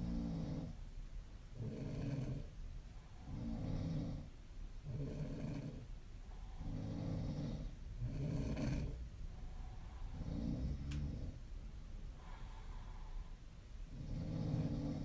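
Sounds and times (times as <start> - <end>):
woman snoring: 0.0 - 0.8, 1.6 - 2.4, 3.3 - 4.3, 6.6 - 9.0, 10.1 - 11.4, 13.9 - 15.0.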